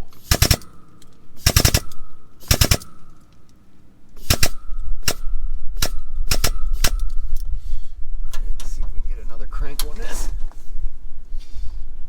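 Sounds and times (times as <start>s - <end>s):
ratchet clicking: 0.1s - 7.4s.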